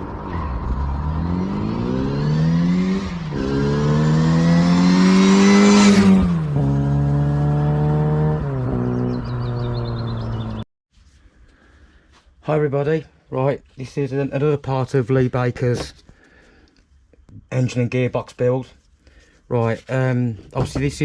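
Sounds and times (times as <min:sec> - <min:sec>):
car engine accelerating: 0:00.0 - 0:10.6.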